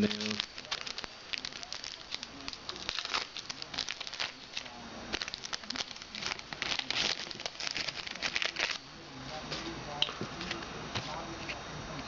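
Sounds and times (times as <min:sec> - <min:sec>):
cards rustling: 0:00.0 - 0:08.8
foil wrapper crinkling: 0:00.0 - 0:08.9.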